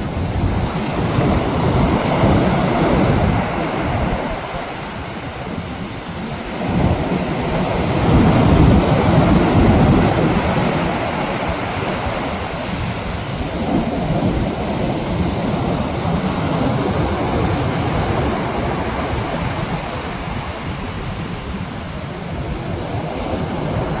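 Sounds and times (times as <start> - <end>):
sea waves breaking: 0.0 - 24.0.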